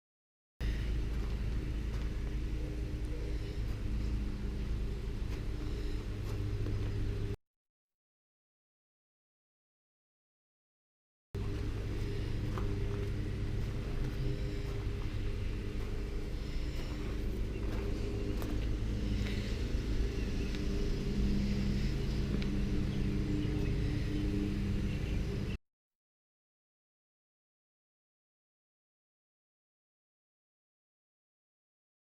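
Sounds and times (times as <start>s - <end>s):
motor running: 0.6s - 7.4s, 11.4s - 25.6s.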